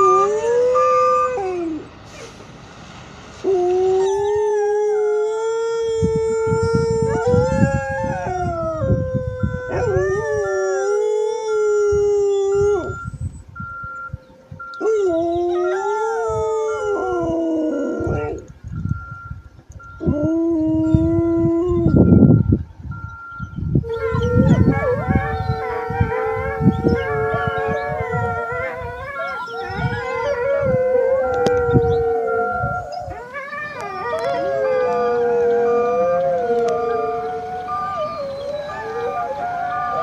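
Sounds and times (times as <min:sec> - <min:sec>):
dogs howling: 0:00.0 - 0:01.9, 0:03.4 - 0:13.0, 0:14.8 - 0:18.5, 0:23.8 - 0:40.0
truck reversing alarm beeping: 0:09.4 - 0:16.9, 0:17.9 - 0:40.0.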